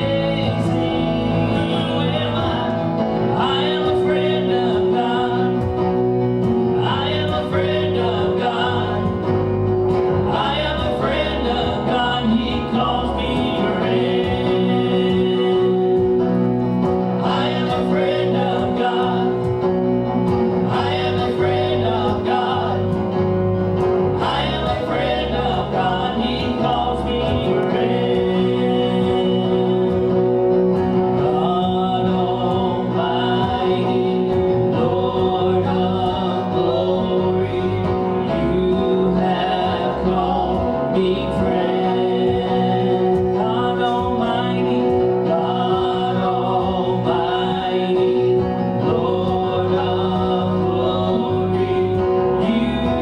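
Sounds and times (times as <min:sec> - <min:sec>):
gospel singing: 0:00.0 - 0:53.0
sustained instrumental chords: 0:00.0 - 0:53.0.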